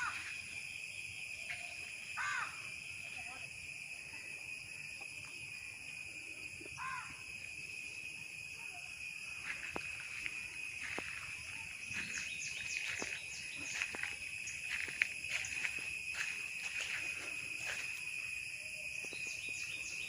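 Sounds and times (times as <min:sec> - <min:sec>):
high-pitched insect chorus: 0:00.0 - 0:20.0.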